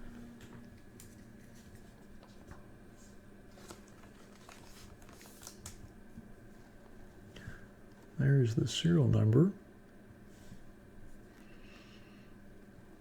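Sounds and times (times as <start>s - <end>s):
low room hum: 0.0s - 13.0s
trading cards rustling: 3.5s - 5.8s.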